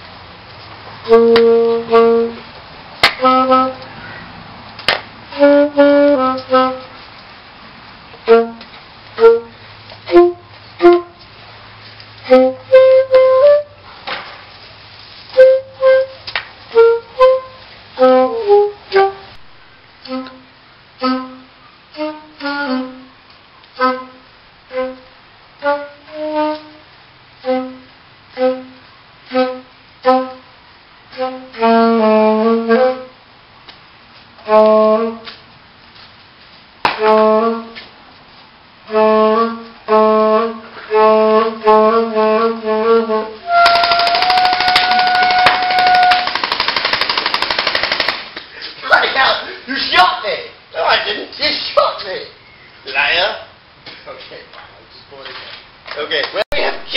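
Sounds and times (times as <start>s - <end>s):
reed instrument melody: 0.8s - 4.3s, 5.2s - 7.2s, 8.1s - 14.0s, 15.2s - 33.2s, 34.4s - 35.5s, 36.8s - 37.9s, 38.8s - 47.6s.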